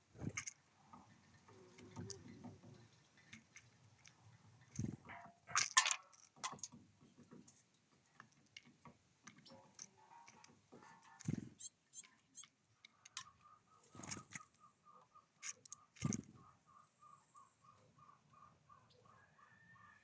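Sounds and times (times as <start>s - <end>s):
birds thumping on feeder: 9.3s - 12.5s, 13.1s - 14.6s, 15.4s - 16.5s.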